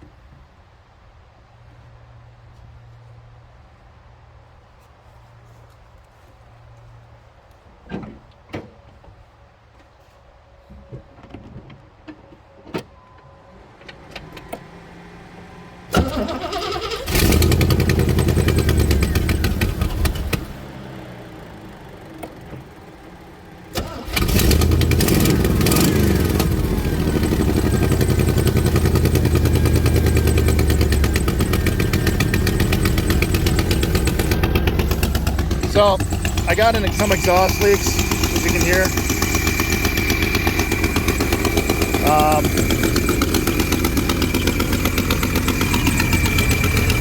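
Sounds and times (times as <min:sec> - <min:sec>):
car engine cranking and starting: 0:13.7 - 0:47.0
engine running with heavy exhaust: 0:15.9 - 0:47.0.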